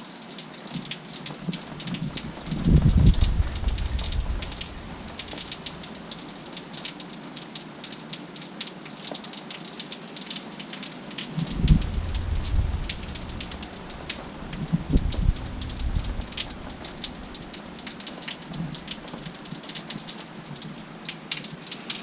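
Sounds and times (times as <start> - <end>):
heavy rain pattering: 0.0 - 22.0
low rumble: 1.7 - 6.4, 11.3 - 19.6.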